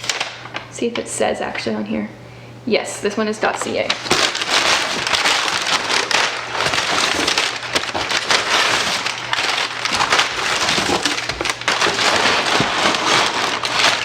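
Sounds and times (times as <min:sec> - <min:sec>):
paper crumpling and rustling: 0:00.0 - 0:00.6, 0:03.5 - 0:14.0.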